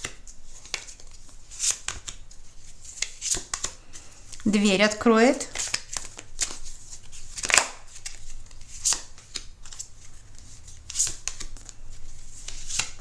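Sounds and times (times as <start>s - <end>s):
cards swishing: 5.5s - 13.0s.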